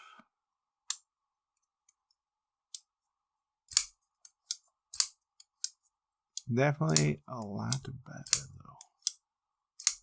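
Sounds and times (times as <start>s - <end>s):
folding knife metallic clicks: 3.7s - 5.8s, 6.4s - 7.2s, 8.2s - 9.2s, 9.8s - 10.0s
knife blade snapping: 9.8s - 10.0s.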